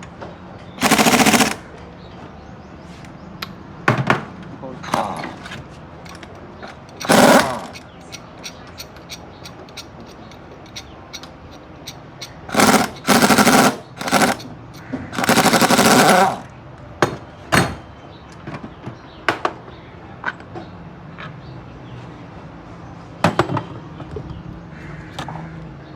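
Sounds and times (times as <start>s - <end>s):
pneumatic impact wrench hammering: 0.8s - 1.6s, 6.7s - 7.8s, 12.5s - 14.5s, 15.2s - 16.5s.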